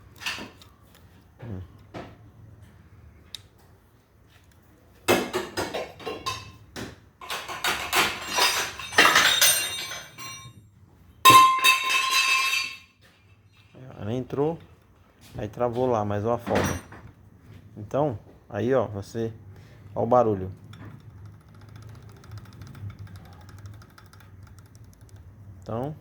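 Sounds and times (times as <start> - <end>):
metal parts clinking and rattling: 7.2 - 10.6, 16.4 - 17.0
sharp clicks: 20.6 - 25.4.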